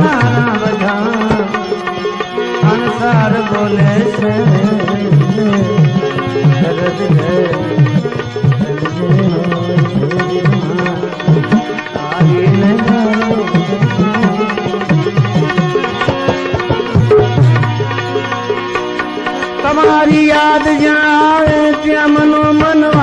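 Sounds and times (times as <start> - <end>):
tabla playing a steady rhythm: 0.0 - 23.0
melody instrument: 4.4 - 20.6.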